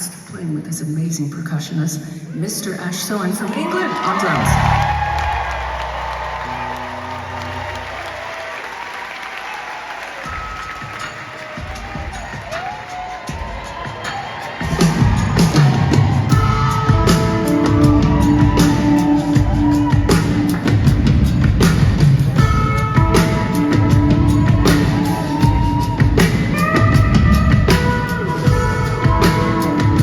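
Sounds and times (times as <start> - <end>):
rock band playing loudly: 10.2 - 30.0.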